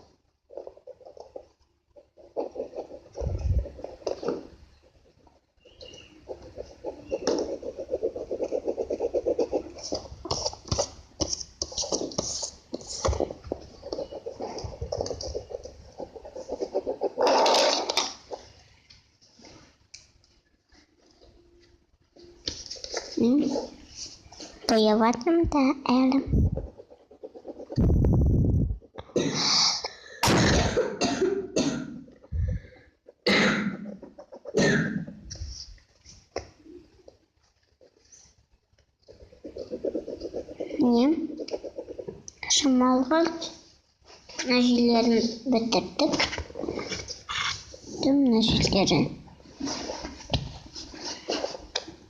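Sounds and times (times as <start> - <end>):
person coughing: 30.2 - 32.0, 33.2 - 33.9, 34.6 - 35.1.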